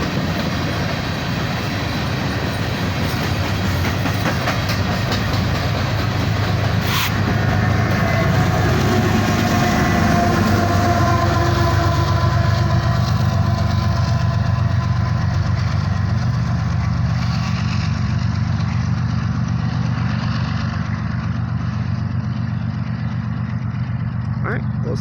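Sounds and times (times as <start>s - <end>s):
train cars rolling: 0.0s - 25.0s
low engine drone: 5.8s - 25.0s.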